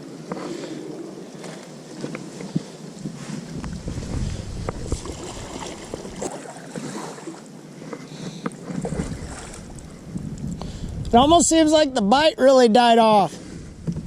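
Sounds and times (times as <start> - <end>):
water sounds: 0.0 - 14.0
wind gusting over microphone: 2.6 - 6.3, 8.7 - 12.4, 13.3 - 14.0.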